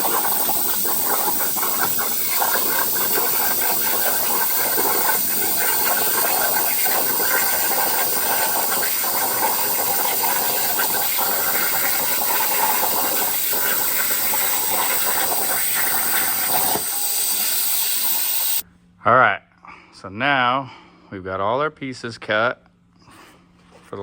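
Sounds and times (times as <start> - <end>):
plasma cutter hissing: 0.0 - 18.6.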